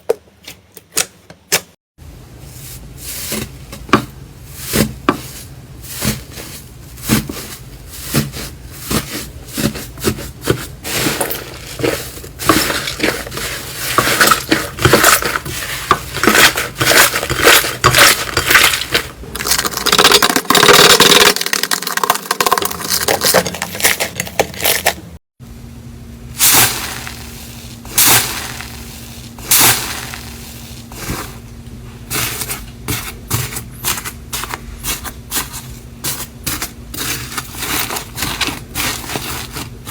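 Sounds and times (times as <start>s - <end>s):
faint steady hum: 25.4s - 39.9s.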